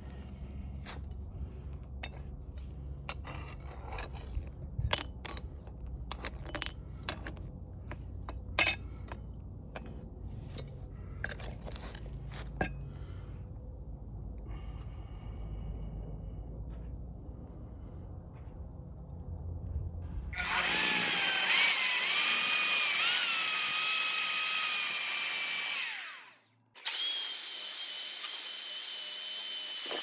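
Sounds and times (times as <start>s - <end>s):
steady low hum: 0.0s - 20.5s
metal pieces clinking and scraping: 3.1s - 9.2s, 9.8s - 12.8s.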